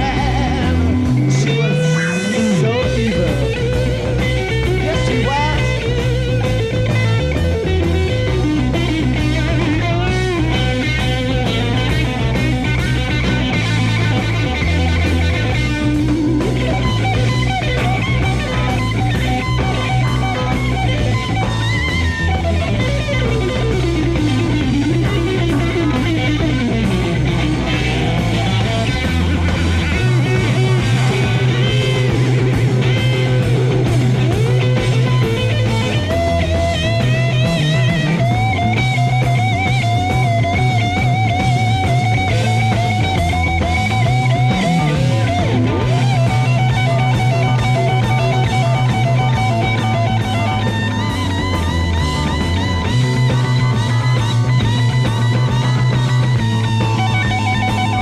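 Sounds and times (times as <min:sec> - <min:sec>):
bass guitar: 0:00.0 - 0:58.0
drums: 0:00.0 - 0:58.0
electric guitar lead lines: 0:00.0 - 0:58.0.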